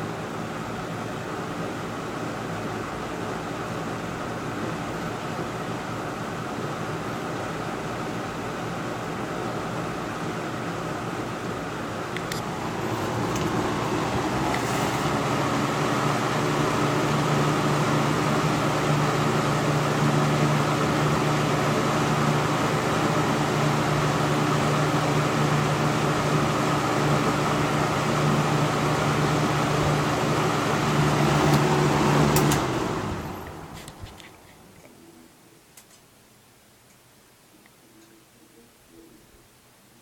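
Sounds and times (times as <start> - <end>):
box fan running: 0.0 - 36.0
clicks: 12.1 - 12.5.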